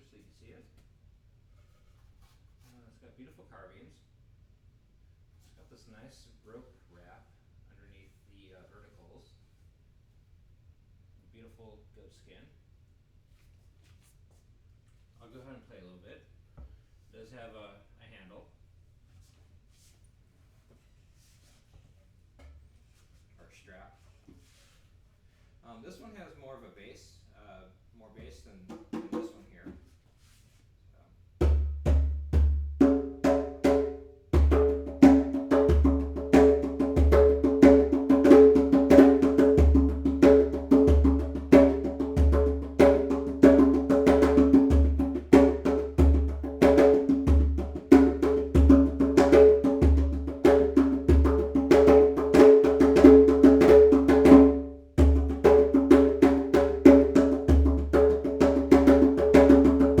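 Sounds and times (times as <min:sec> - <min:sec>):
hand drumming on djembe: 0:28.7 - 0:29.4, 0:31.4 - 1:00.0.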